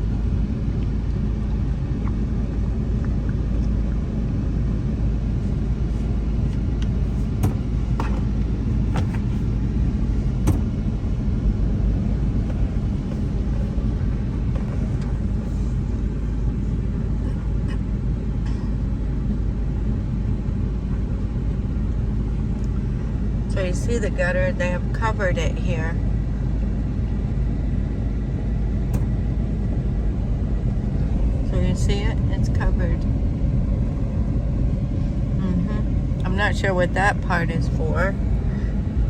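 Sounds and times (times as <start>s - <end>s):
car interior road rumble: 0.0s - 39.0s
light knocks: 7.4s - 8.3s.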